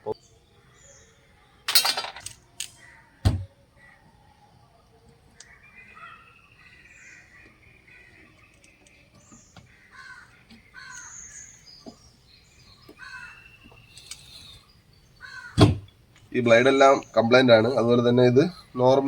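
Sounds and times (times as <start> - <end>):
crows cawing: 2.8 - 4.1, 5.4 - 8.3, 9.6 - 11.5, 12.9 - 13.8, 15.2 - 19.0.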